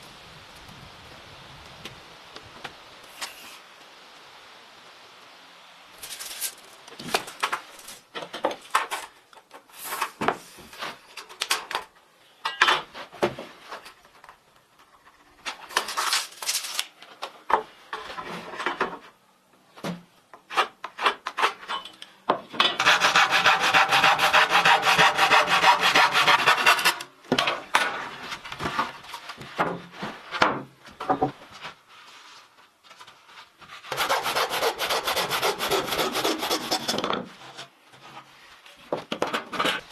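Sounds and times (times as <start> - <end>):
hand tool rasping wood: 22.8 - 27.0, 33.9 - 37.0.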